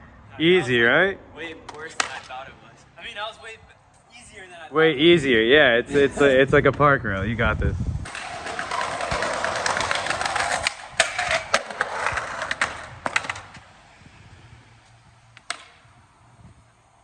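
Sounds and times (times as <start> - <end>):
skateboard wheels rolling on pavement: 0.4 - 5.4, 6.5 - 17.0
skateboard clacking: 1.7 - 2.3, 8.1 - 13.9, 15.2 - 16.0.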